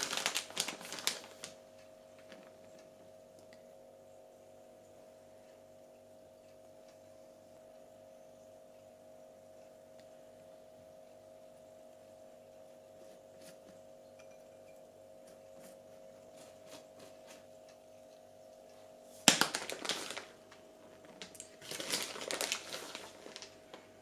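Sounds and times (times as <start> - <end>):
crinkling and rustling: 0.0 - 2.9, 19.2 - 24.0
faint steady hum: 0.0 - 24.0.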